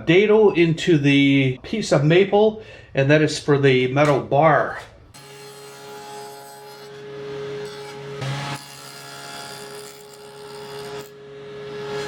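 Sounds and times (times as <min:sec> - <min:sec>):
power tool motor cutting wood: 0:07.6 - 0:11.2.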